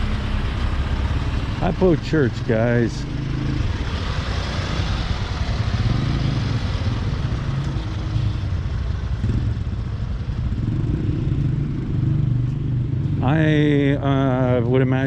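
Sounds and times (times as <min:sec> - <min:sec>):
street traffic: 0:00.0 - 0:15.0
small motorcycle engine running: 0:01.6 - 0:11.6.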